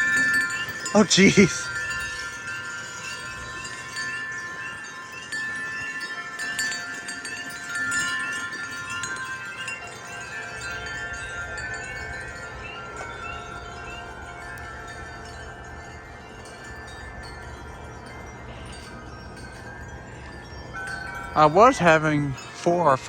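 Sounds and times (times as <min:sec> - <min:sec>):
wind chimes ringing: 0:00.0 - 0:23.0.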